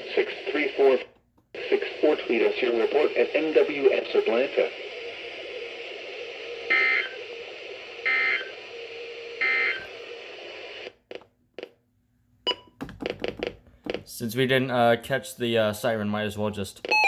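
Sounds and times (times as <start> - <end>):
radio hiss: 0.0 - 10.9.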